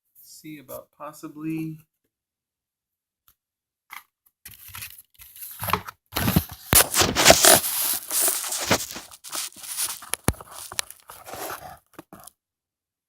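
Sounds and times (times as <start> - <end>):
plastic packaging rustling: 5.5 - 12.3.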